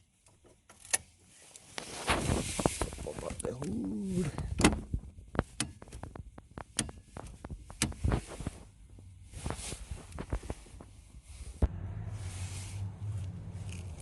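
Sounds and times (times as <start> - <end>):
car hood latch clicks and knocks: 4.4 - 8.0.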